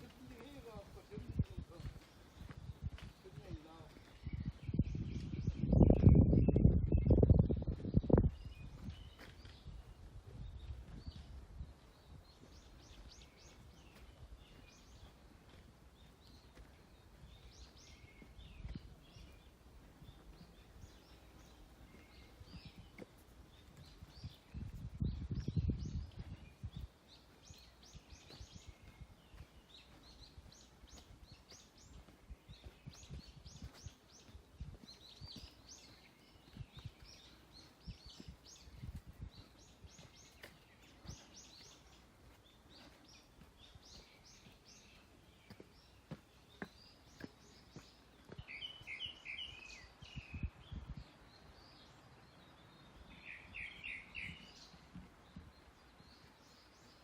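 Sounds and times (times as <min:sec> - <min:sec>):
high thin birdsong: 0:00.0 - 0:57.0
lower fast bird chirping: 0:00.0 - 0:57.0.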